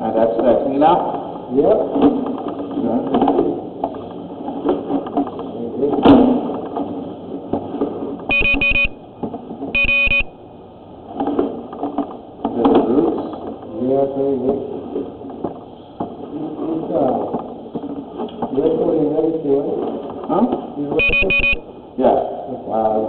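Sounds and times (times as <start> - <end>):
short electronic beeps: 8.3 - 9.0, 9.8 - 10.4, 21.0 - 21.7.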